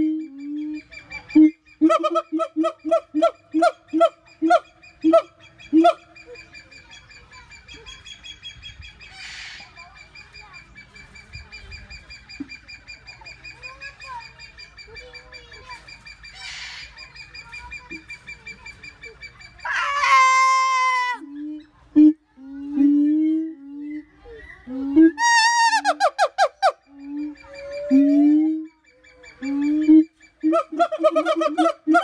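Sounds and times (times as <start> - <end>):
distant animal calls: 24.5 - 32.0.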